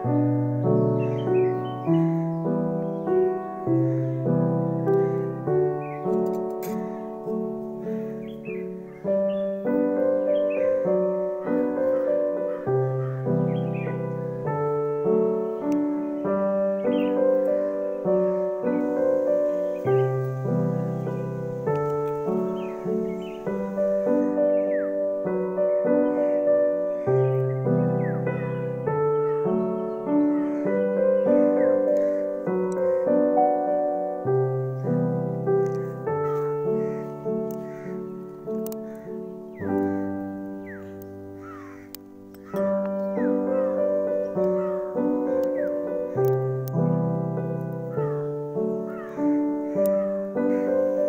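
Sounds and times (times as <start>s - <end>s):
gentle piano tune: 0.0s - 51.0s.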